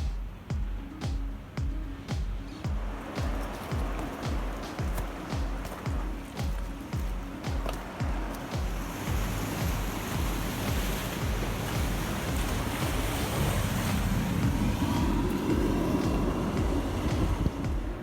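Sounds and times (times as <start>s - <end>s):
sea surf washing ashore: 0.0s - 18.0s
wind buffeting microphone: 0.0s - 18.0s.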